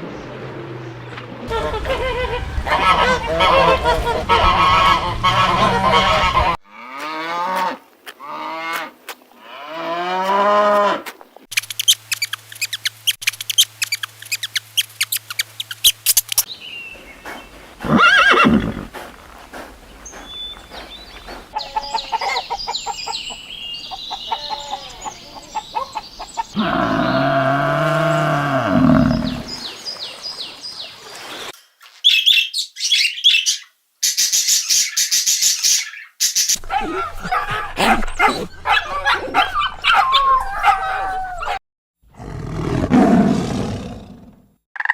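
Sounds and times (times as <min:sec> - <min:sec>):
loud animal call: 0:01.5 - 0:06.6, 0:26.5 - 0:29.5
rising and falling animal calls: 0:01.5 - 0:06.6, 0:16.9 - 0:23.3, 0:23.9 - 0:29.7, 0:36.6 - 0:41.6
birdsong: 0:11.3 - 0:41.6
long low livestock call: 0:26.6 - 0:29.5.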